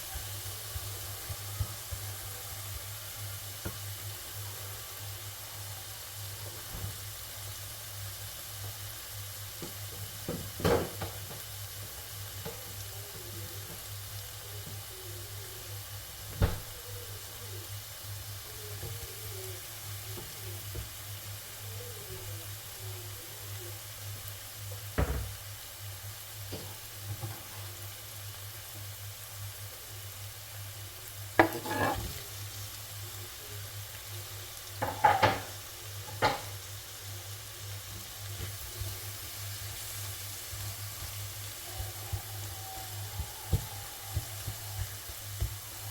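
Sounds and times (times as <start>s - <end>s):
food frying in pan: 0.0s - 45.9s.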